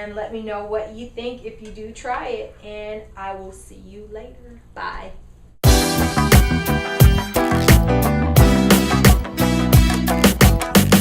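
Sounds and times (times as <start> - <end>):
upbeat music with drums and guitar: 5.6 - 11.0.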